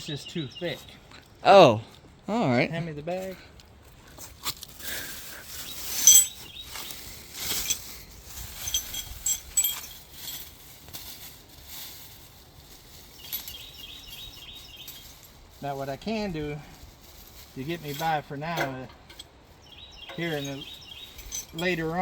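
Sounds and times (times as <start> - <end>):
rustling: 3.9 - 22.0
light metallic clinks: 5.8 - 10.6, 17.8 - 19.4, 20.0 - 22.0.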